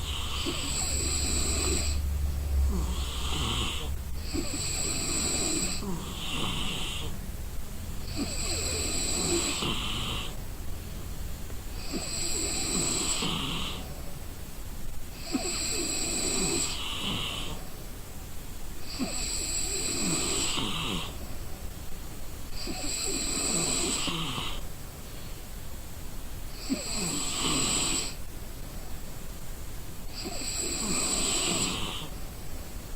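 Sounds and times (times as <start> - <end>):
person snoring: 0.0 - 7.2, 8.0 - 10.4, 11.8 - 14.0, 15.2 - 17.6, 18.8 - 21.2, 22.6 - 24.6, 26.5 - 28.2, 30.1 - 32.1.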